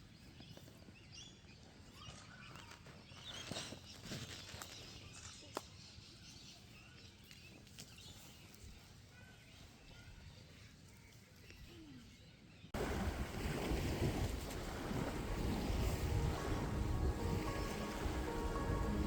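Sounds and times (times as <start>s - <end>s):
rush of wind and water: 12.8s - 19.0s.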